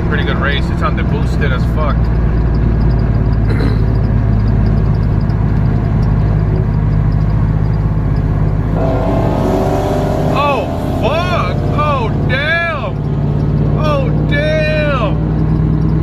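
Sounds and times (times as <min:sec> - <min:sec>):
engine idling: 0:00.0 - 0:16.0
higher engine note: 0:08.6 - 0:15.3.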